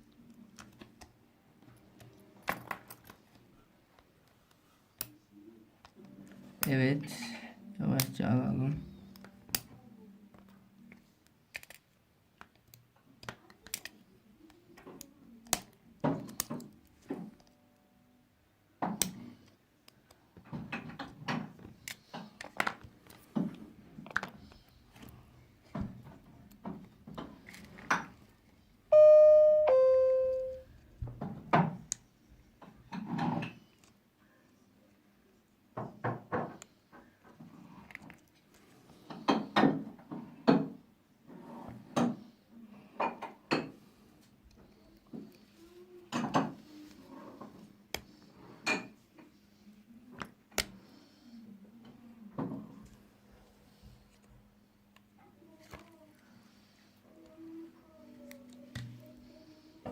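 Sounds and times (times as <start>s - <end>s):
tools and phone parts clicking: 11.5s - 14.0s
two-note doorbell chime: 28.9s - 30.6s.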